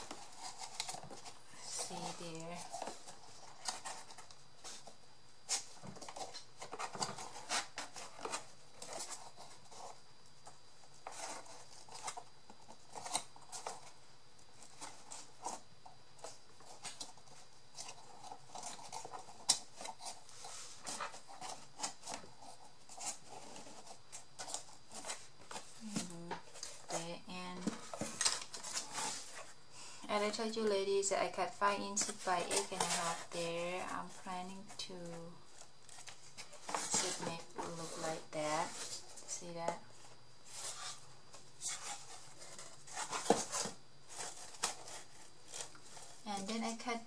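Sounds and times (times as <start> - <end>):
paper and cardboard rustling: 0.0 - 47.0.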